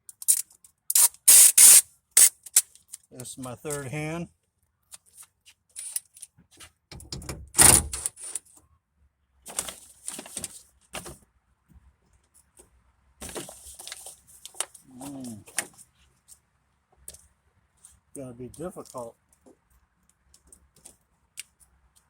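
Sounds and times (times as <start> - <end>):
tape ripping off roll: 0.9 - 2.6.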